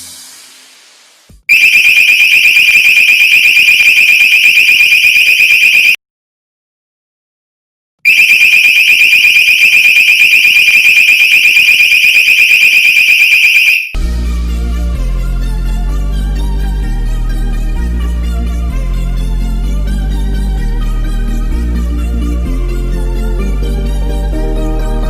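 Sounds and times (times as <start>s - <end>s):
high-pitched pulsing alarm tone: 1.5s - 6.0s, 8.1s - 14.0s.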